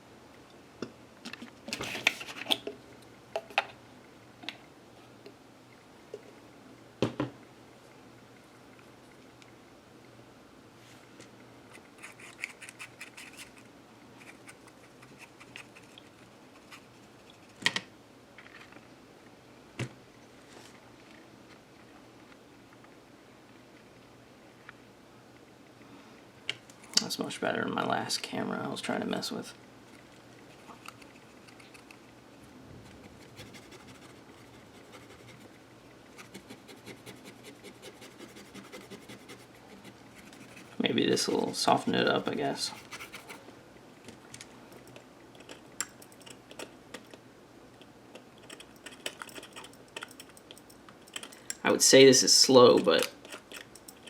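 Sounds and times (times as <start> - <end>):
small parts and tools clicking: 44.3 - 47.2, 47.8 - 51.7, 52.7 - 54.0.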